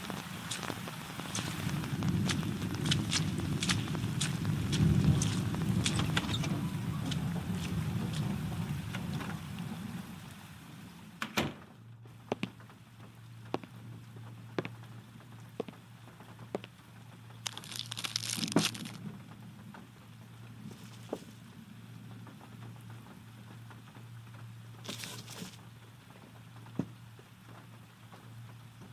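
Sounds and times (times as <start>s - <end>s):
wood fire crackling: 0.0s - 10.4s, 14.6s - 19.1s
low rumble: 0.0s - 11.0s
faint steady hum: 0.0s - 28.9s.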